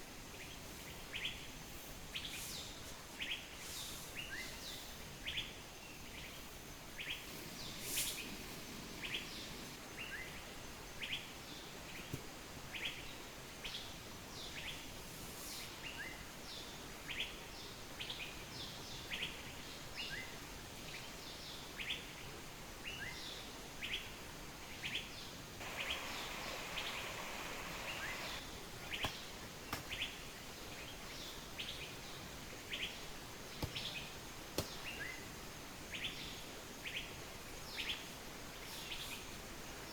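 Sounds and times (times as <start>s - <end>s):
rustle: 0.0s - 39.9s
small bird chirping: 24.8s - 30.2s
waterfall hiss: 25.4s - 29.9s, 33.1s - 39.9s.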